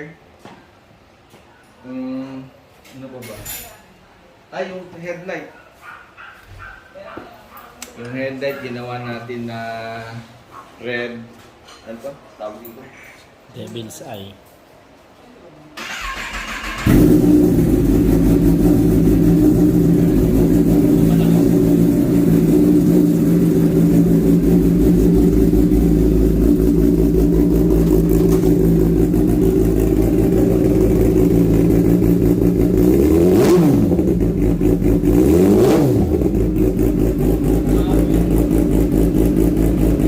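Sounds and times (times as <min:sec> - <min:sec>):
motorcycle engine idling and revving: 0:16.3 - 0:40.0.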